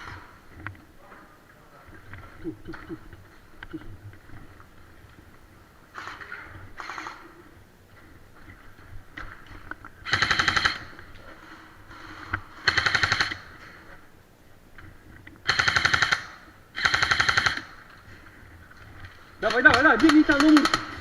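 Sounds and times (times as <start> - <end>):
airsoft guns firing bursts: 10.0 - 11.0, 12.6 - 13.6, 15.4 - 17.9, 19.4 - 21.0.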